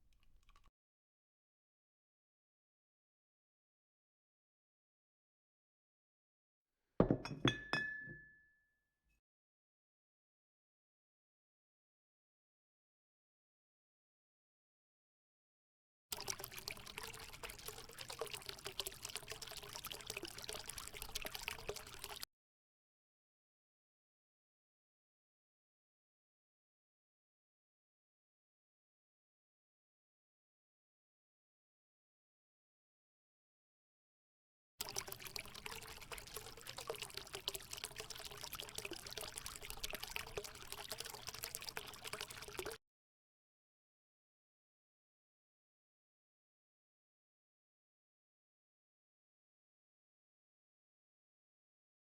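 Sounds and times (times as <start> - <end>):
small ticks and splashes: 0.0 - 0.7, 16.1 - 22.2, 34.8 - 42.8
liquid pouring: 0.1 - 0.7, 16.2 - 22.3, 34.8 - 42.8.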